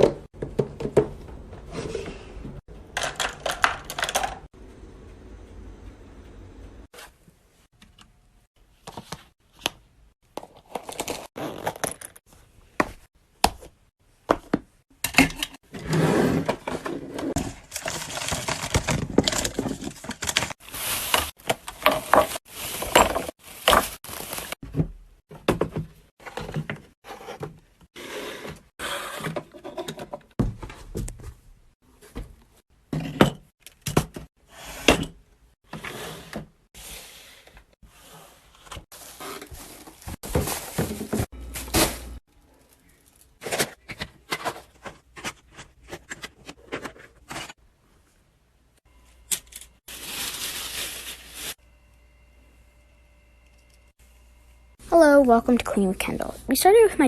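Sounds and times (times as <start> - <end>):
household items knocking and clattering: 0.0 - 1.8, 2.9 - 4.5, 16.4 - 27.6, 39.3 - 42.2.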